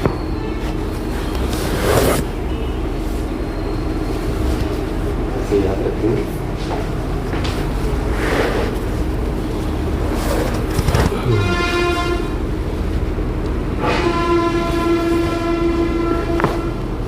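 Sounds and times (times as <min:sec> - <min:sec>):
loud steady rumble: 0:00.0 - 0:17.0
horn blasts: 0:11.0 - 0:12.6, 0:13.7 - 0:17.0.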